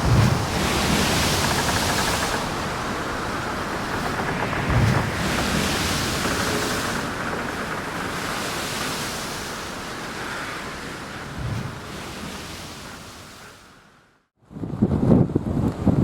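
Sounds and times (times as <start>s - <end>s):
low gust thump: 0.0s - 0.9s, 11.4s - 12.4s
wind buffeting microphone: 0.0s - 13.7s, 14.4s - 16.0s
choppy sea waves: 0.0s - 16.0s.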